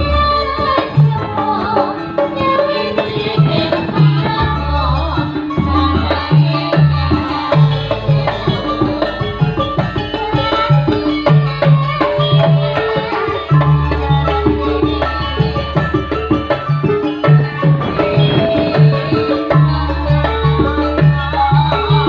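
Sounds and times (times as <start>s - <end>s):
bass notes: 0.0s - 1.2s
hand drums: 0.0s - 22.0s
melody line: 0.0s - 22.0s.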